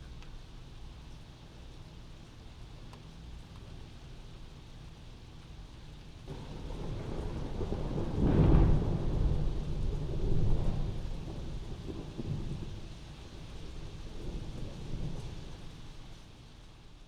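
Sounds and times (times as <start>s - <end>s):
steady rain: 0.0s - 17.0s
thunderclap: 6.3s - 15.8s.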